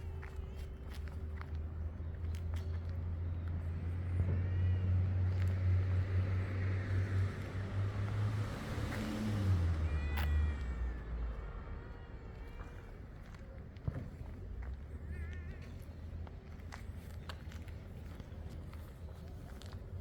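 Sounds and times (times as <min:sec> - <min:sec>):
vehicle engine hum: 0:00.0 - 0:15.2.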